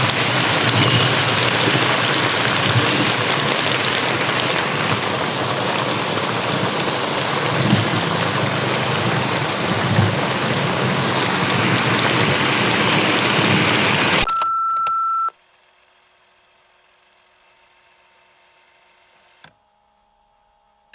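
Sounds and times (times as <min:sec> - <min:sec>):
heavy rain hissing: 0:00.0 - 0:14.2
steady beep: 0:14.2 - 0:15.3
faint hum: 0:19.4 - 0:20.9.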